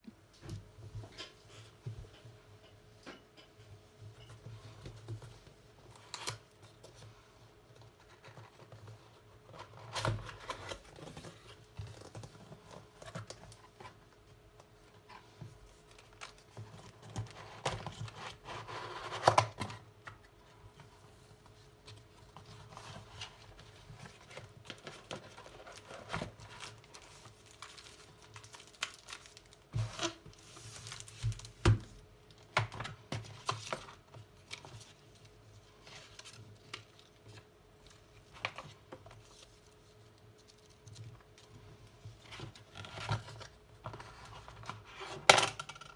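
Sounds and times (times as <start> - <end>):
wrapping rustling and crinkling: 21.4 - 45.3.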